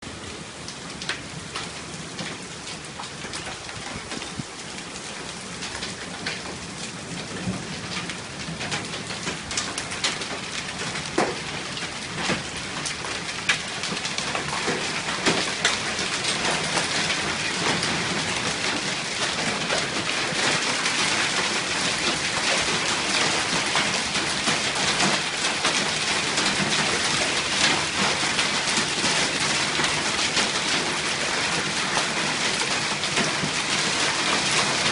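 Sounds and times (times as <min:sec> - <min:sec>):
hailstones striking hard surfaces: 0:07.1 - 0:34.9.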